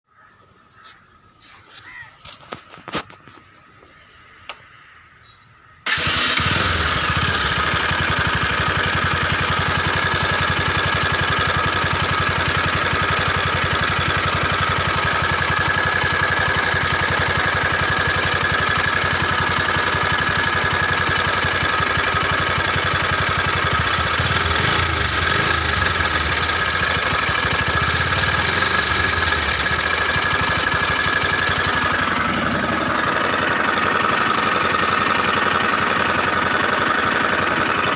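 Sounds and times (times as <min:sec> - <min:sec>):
click: 0:04.4 - 0:04.7
motorcycle engine idling: 0:05.9 - 0:37.9.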